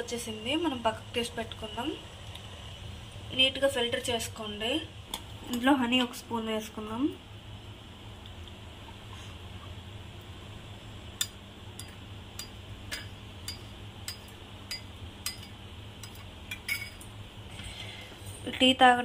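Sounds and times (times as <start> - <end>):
spoon clinking against cup: 11.2 - 17.1.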